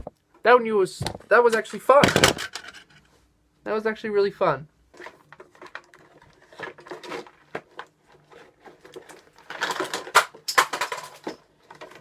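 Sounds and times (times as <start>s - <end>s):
small hard objects clattering: 5.0s - 12.0s.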